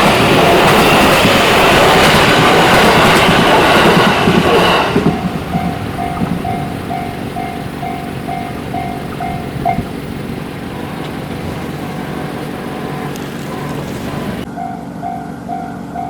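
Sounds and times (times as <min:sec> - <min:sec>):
railroad crossing warning bell: 0:00.0 - 0:16.0
low steady rumble: 0:05.0 - 0:14.5.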